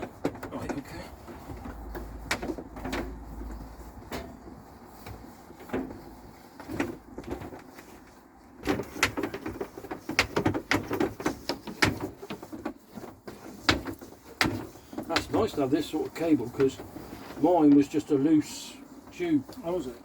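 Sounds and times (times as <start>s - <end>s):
cable knocking through fittings: 8.6s - 17.9s.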